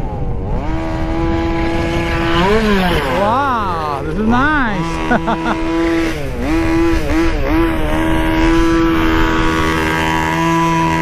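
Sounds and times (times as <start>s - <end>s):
small two-stroke engine revving: 0.0s - 11.0s.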